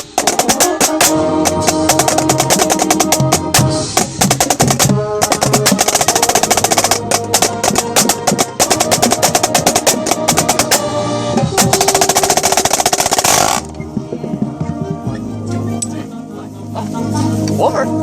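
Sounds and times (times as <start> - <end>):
marching snare drum rolls: 0.0 - 15.0
brass section sustained notes: 0.3 - 4.0, 4.8 - 13.8.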